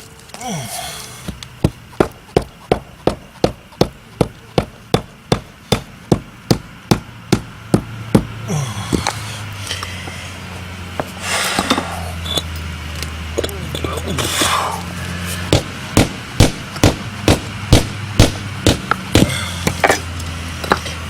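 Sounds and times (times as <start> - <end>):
rubber mallet pounding paver: 1.2 - 9.2, 15.5 - 20.9.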